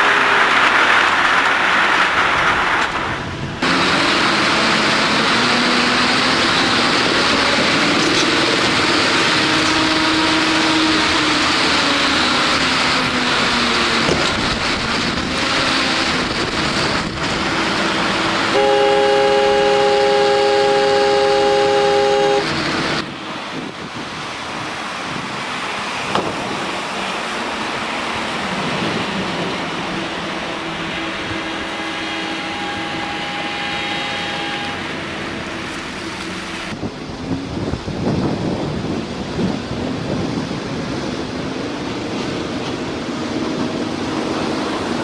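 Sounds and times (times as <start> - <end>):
rush of wind and water: 0.0 - 45.0
multi-tone horn: 18.5 - 22.6, 31.4 - 35.1.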